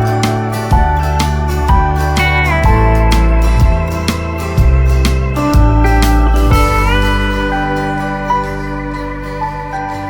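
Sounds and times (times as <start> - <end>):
guitar-led instrumental music: 0.0 - 10.0.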